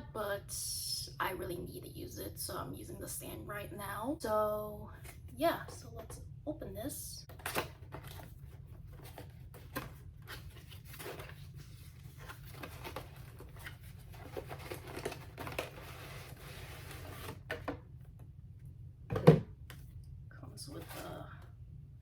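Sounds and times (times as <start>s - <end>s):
paper rustling: 7.9s - 17.6s.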